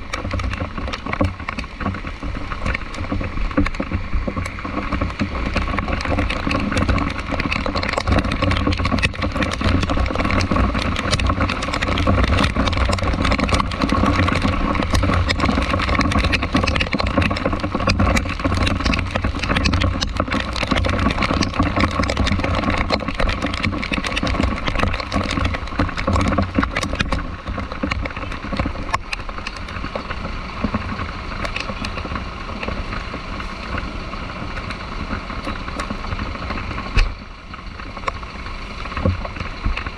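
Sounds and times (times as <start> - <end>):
road noise: 0.0 - 39.9
vehicle engine rumbling: 0.0 - 39.9.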